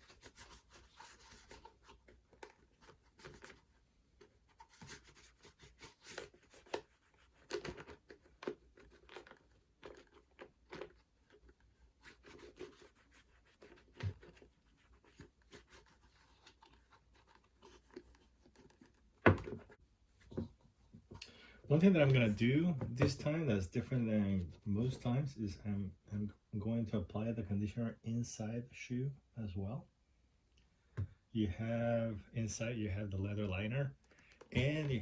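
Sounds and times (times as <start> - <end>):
scratchy rubbing on leather: 11.9 - 19.0.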